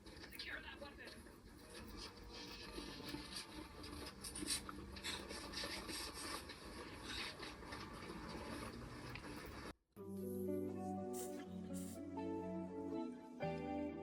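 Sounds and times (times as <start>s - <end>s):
hair being brushed and rubbed: 11.2s - 12.2s.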